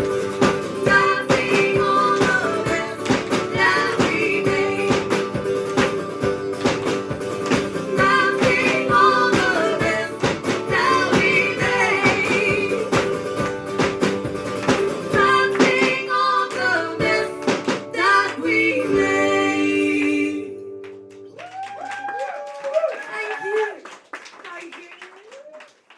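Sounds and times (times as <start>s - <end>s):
women singing: 0.0s - 13.6s, 14.9s - 20.8s
strummed guitar: 0.0s - 19.6s.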